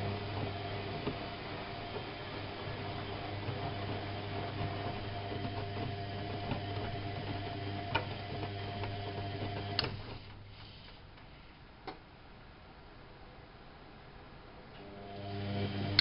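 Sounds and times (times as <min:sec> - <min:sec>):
washing machine humming: 0:00.0 - 0:10.7, 0:14.8 - 0:16.0.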